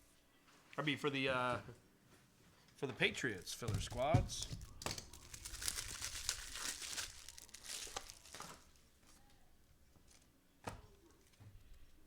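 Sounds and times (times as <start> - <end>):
cellophane crinkling and tearing: 3.3 - 9.2.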